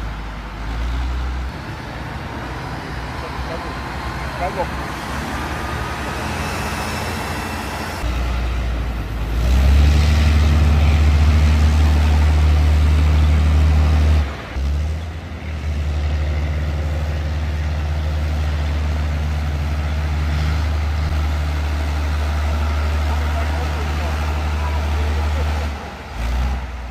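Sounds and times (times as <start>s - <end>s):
truck engine droning under load: 0.0s - 26.9s.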